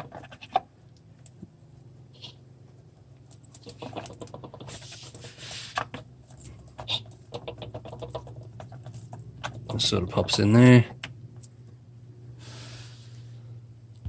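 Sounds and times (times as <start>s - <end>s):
oil filter clicks and scrapes: 0.0s - 0.7s, 3.3s - 10.2s.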